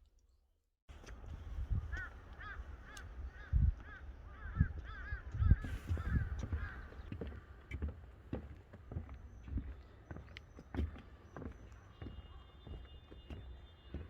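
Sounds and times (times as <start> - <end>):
crows cawing: 1.9 - 7.2.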